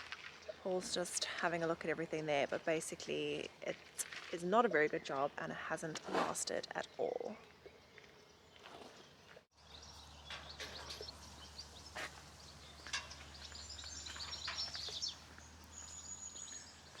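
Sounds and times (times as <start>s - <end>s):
birds chirping and calling: 6.7s - 17.0s.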